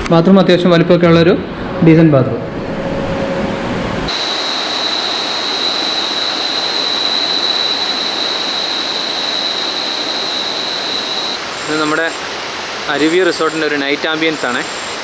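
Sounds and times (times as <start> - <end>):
high-pitched whine: 0.0 - 15.0
waterfall roaring: 4.1 - 15.0.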